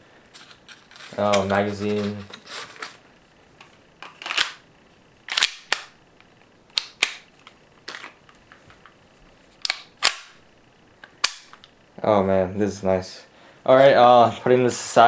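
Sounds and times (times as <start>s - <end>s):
pistol mechanical clicks: 5.3s - 6.0s, 9.6s - 10.4s.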